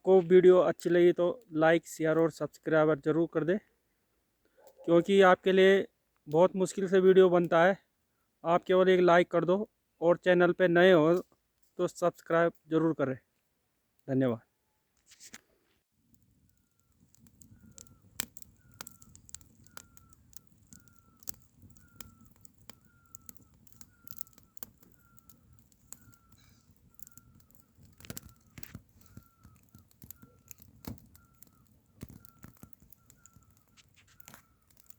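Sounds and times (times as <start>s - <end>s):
sharp clicks: 16.6s - 34.9s.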